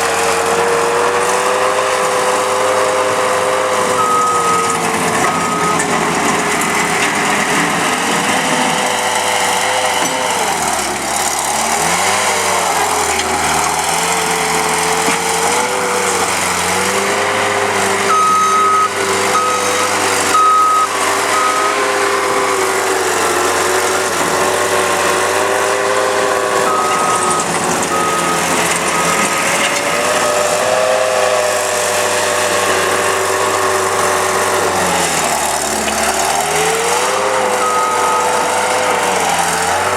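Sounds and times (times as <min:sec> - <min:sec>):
diesel engine running: 0:00.0 - 0:39.9
backup alarm beeping: 0:04.0 - 0:06.0, 0:17.0 - 0:22.6, 0:26.5 - 0:29.5, 0:37.2 - 0:38.6.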